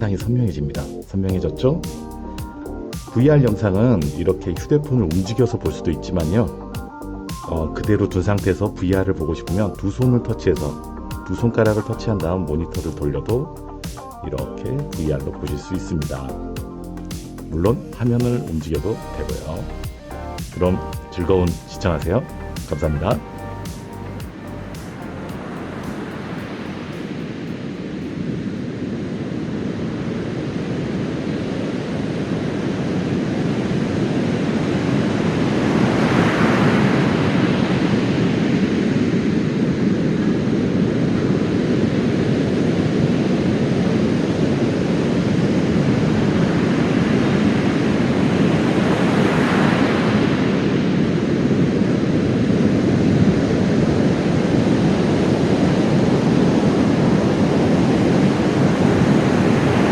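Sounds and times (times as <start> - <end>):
big waves crashing: 13.9 - 59.9
surf waves washing on beach: 20.4 - 59.9.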